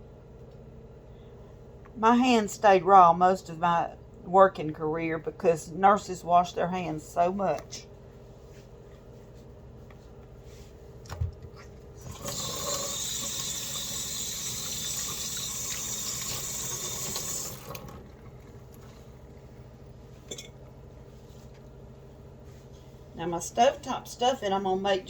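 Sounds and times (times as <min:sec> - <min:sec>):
sink tap running: 0:12.0 - 0:18.6.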